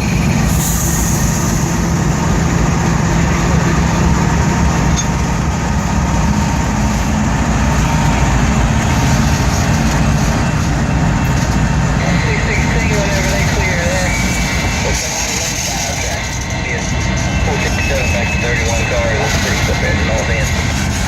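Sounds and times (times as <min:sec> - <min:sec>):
diesel locomotive engine hum: 0:00.0 - 0:21.0
train rumble: 0:00.0 - 0:21.0.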